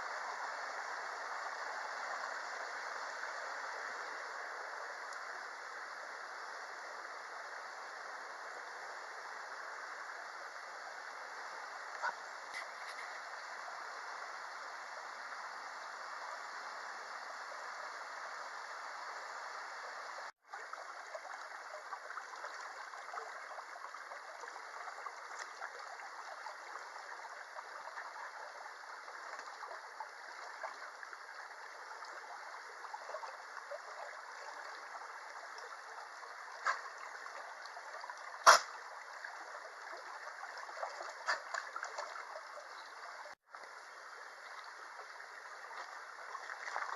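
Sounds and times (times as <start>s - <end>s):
stream rushing water: 0.0s - 46.9s.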